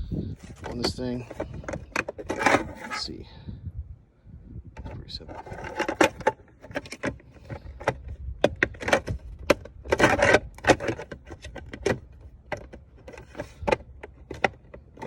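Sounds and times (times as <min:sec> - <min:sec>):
plastic clicks and rattles: 0:00.4 - 0:03.0, 0:04.8 - 0:15.0
plastic scraping rustles: 0:00.4 - 0:03.1, 0:04.8 - 0:15.0.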